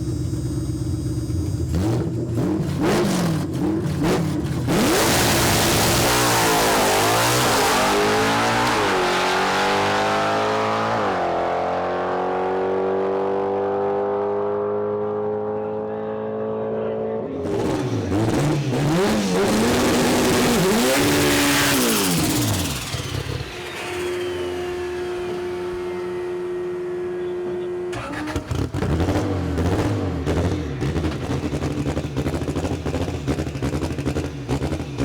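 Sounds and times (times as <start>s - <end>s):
drag racing car engine revving: 0.0s - 15.8s, 17.3s - 35.0s.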